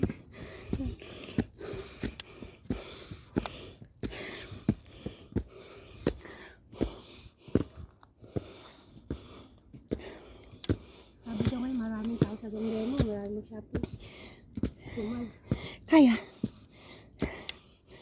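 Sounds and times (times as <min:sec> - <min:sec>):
person breathing heavily: 0:00.0 - 0:18.0.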